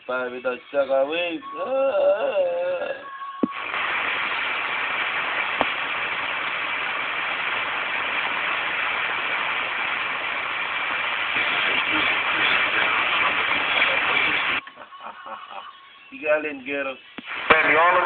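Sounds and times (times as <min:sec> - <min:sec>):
radio static hiss: 0:00.0 - 0:18.0
radio click: 0:03.4 - 0:04.7, 0:05.3 - 0:06.5, 0:17.1 - 0:17.8.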